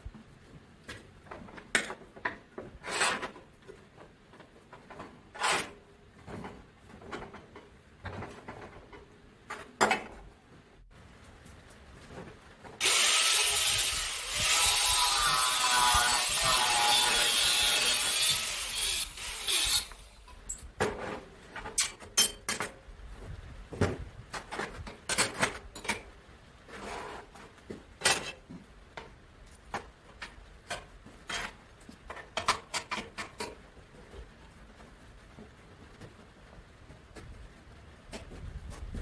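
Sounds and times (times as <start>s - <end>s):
power tool cutting metal: 12.8s - 20.3s.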